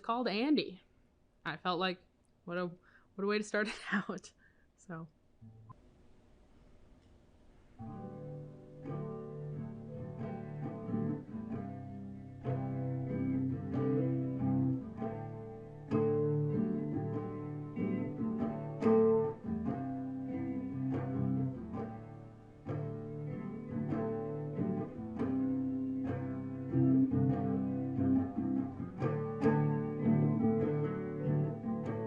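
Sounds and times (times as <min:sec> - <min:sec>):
solo guitar chords: 0:07.8 - 0:32.0.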